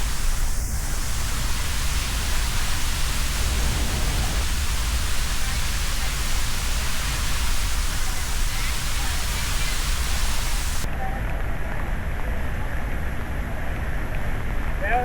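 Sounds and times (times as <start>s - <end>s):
waterfall rushing: 0.0s - 10.9s.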